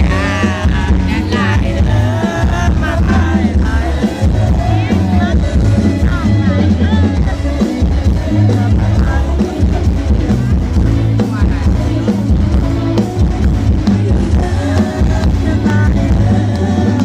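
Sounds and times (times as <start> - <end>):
live band playing song: 0.0 - 17.0
loud bass: 0.0 - 17.0
steady drum beat: 0.0 - 17.0.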